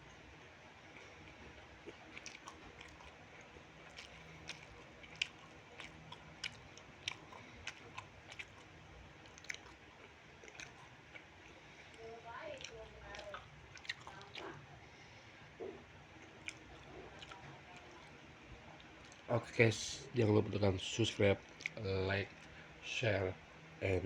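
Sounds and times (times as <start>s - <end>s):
person chewing food: 0.0s - 19.3s, 20.9s - 22.8s
faint background hum: 0.0s - 24.0s.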